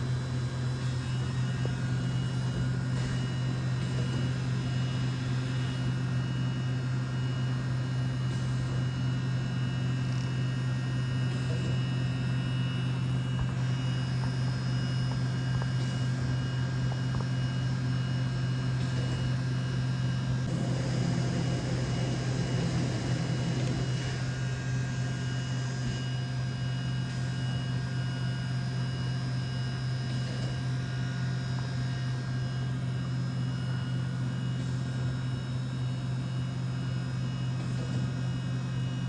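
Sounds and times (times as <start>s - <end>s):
machining centre hum: 0.0s - 39.0s
thin whining tones: 20.4s - 25.9s.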